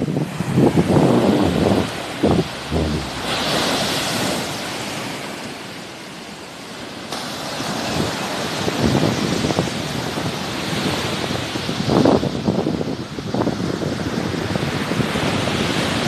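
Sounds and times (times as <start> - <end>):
wind rumbling on microphone: 0.0 - 4.7
sea waves breaking: 0.3 - 5.4.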